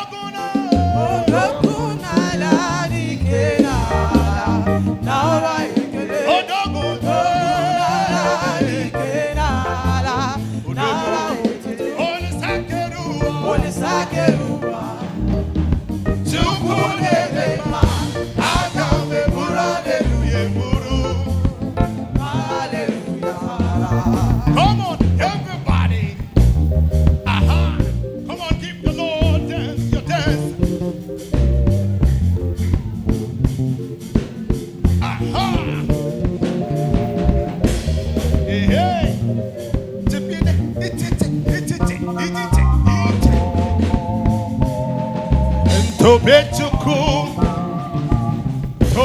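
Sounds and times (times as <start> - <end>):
person singing: 0.0 - 26.3, 27.2 - 30.8, 34.9 - 49.0
band playing gospel music: 0.0 - 49.0.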